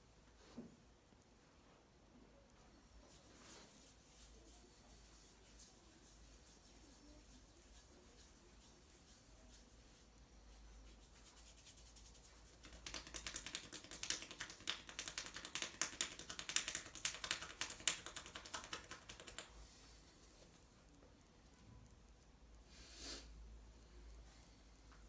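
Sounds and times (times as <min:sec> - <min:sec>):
hands tapping in massage: 0:12.4 - 0:19.5.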